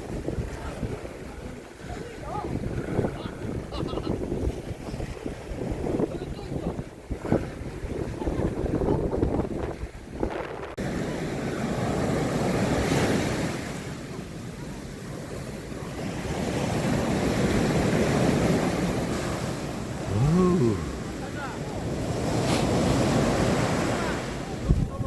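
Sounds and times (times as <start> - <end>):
wind on microphone: 0.0 - 10.8, 24.6 - 25.0
waves breaking on a beach: 0.0 - 25.0
short voice: 20.1 - 21.0.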